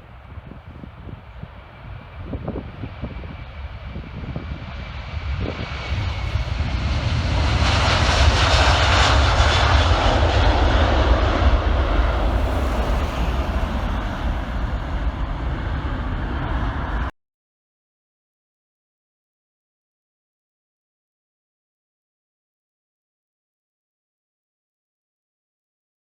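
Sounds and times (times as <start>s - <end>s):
jet airliner roaring: 0.0s - 17.1s.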